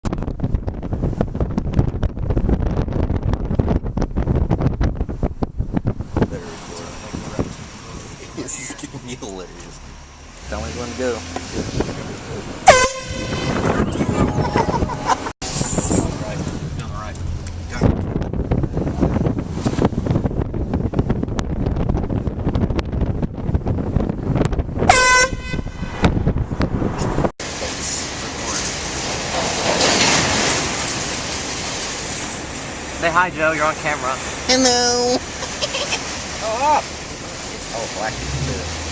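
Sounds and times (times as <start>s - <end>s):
wind buffeting microphone: 0.0s - 8.7s, 11.1s - 34.4s
air horn blast: 12.6s - 15.3s, 24.9s - 26.1s.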